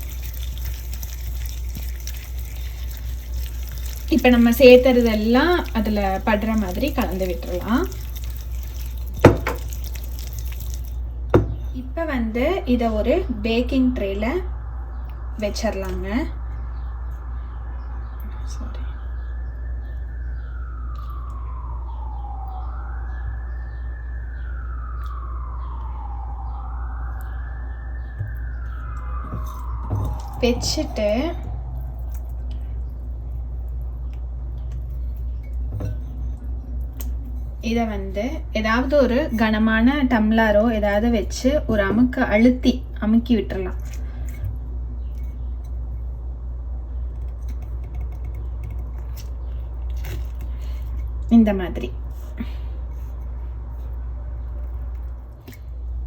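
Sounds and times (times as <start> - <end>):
low hum: 0.0 - 56.0
emergency siren wailing: 18.7 - 32.5.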